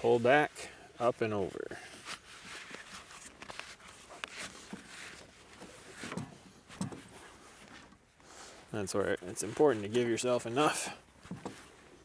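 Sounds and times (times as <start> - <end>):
strap webbing rustling: 1.8 - 8.0.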